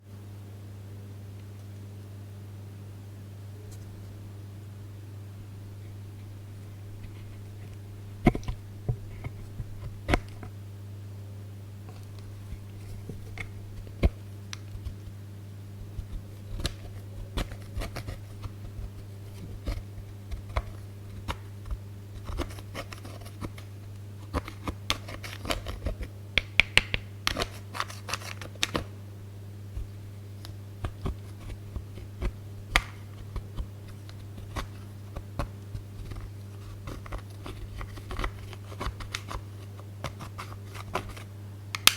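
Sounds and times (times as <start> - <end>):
low electrical hum: 0.0 - 41.9
sharp clicks and crackles of slime: 15.9 - 28.9, 29.8 - 41.9.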